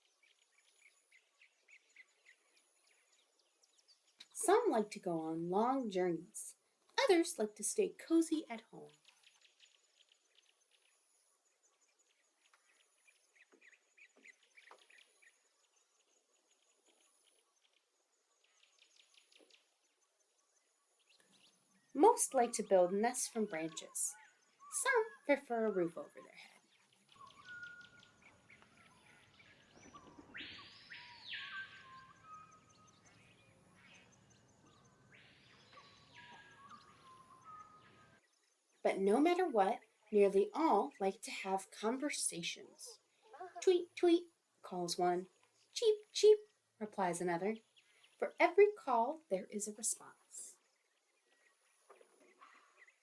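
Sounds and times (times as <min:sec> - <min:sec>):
faint birdsong: 0:00.0 - 0:53.0
bird chirps and calls: 0:21.1 - 0:38.2.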